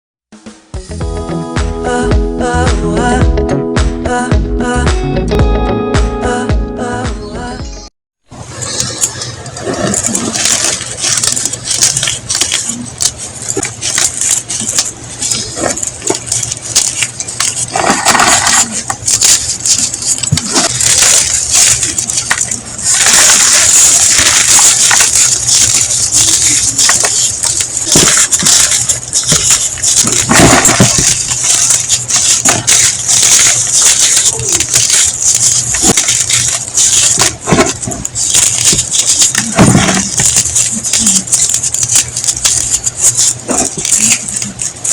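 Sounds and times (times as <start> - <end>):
chalk being crushed by hand: 9.6 - 44.9.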